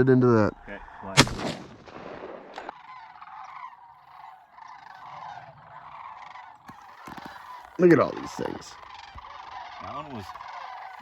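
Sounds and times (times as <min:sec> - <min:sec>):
distant flock of birds calling: 0:00.0 - 0:11.0
shotgun shots: 0:01.2 - 0:02.7.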